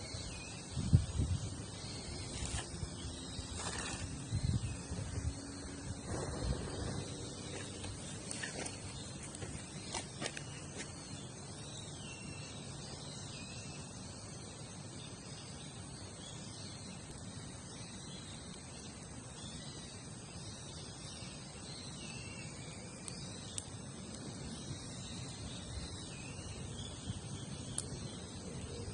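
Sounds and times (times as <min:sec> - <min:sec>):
crickets chirping: 0:00.0 - 0:28.9.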